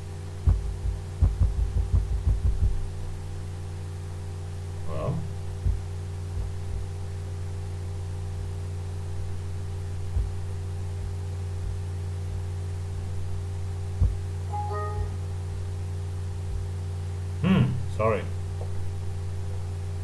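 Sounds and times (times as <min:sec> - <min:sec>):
faint low thumps: 0:00.0 - 0:03.3, 0:05.0 - 0:07.0, 0:10.0 - 0:11.8, 0:13.9 - 0:15.3
electrical hum: 0:00.0 - 0:20.0.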